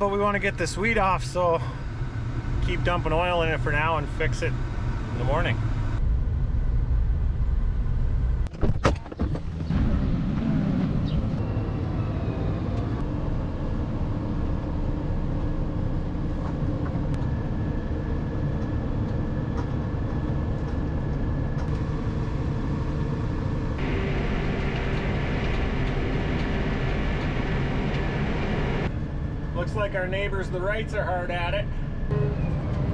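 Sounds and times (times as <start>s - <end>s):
tractor engine rumbling: 0.0s - 10.1s, 10.7s - 32.9s.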